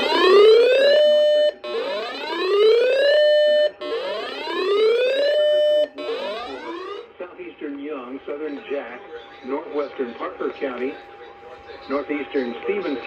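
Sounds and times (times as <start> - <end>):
rising whooping alert tone: 1.6 - 7.0.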